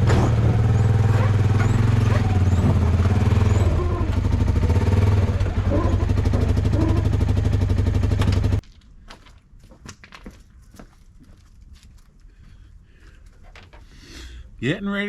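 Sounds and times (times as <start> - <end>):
vehicle engine running: 0.0 - 8.6.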